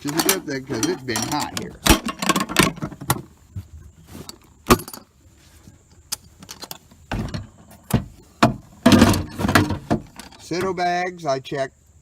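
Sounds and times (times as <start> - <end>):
items clacking and knocking: 0.0 - 5.2, 5.8 - 10.8
short rustle: 2.8 - 10.6.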